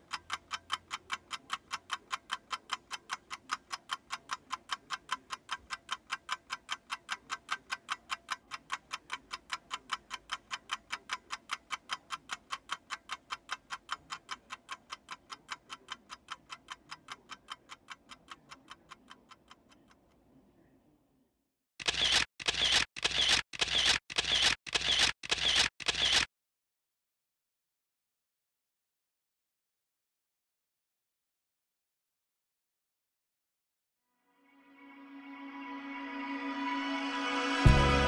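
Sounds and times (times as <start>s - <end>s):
watch ticking: 0.0s - 20.2s
sharp clicks: 21.8s - 26.3s.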